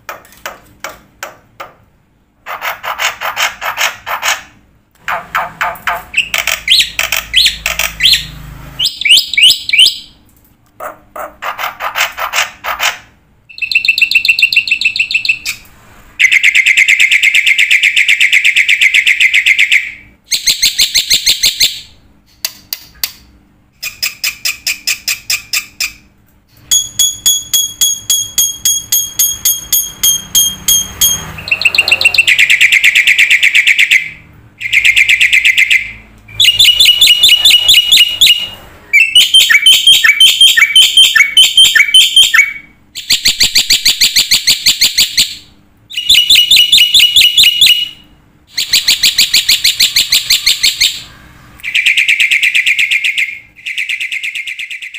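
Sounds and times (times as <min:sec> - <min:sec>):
bird singing rapid trills: 0:13.5 - 0:15.6, 0:26.7 - 0:48.0.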